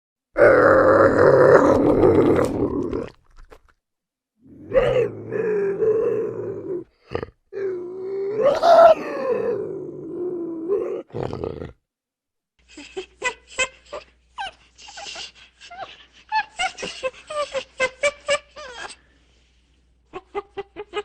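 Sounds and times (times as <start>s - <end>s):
animal grunting call: 4.4s - 11.8s.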